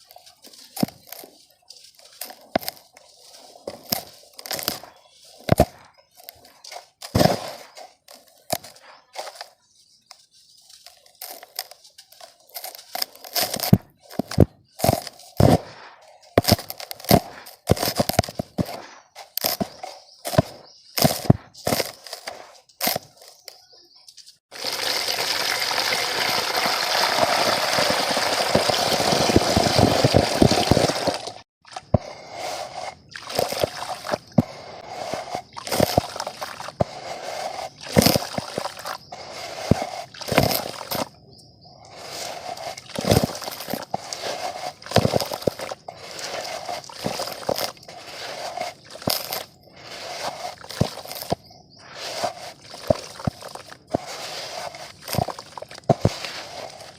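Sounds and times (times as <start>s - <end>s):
mud lumps crunching and splashing: 0.0s - 56.9s
watery rush: 24.5s - 31.4s.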